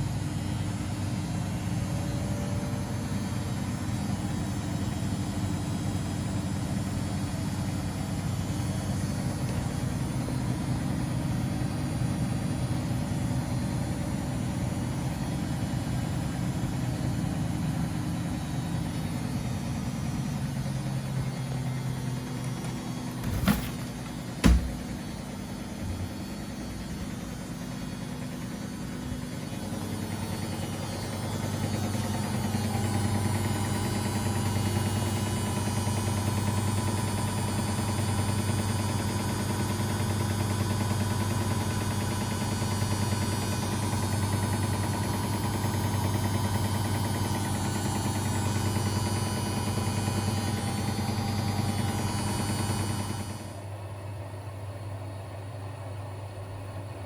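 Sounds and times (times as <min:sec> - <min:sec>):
washing machine motor hum: 0:00.0 - 0:37.5.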